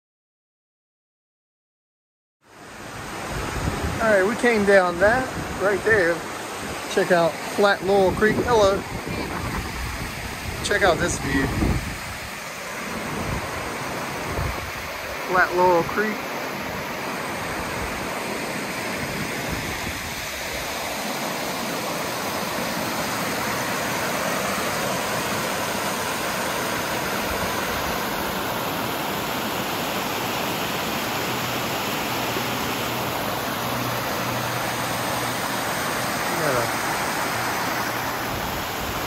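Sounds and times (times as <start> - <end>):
creek water flowing: 2.5 - 39.0.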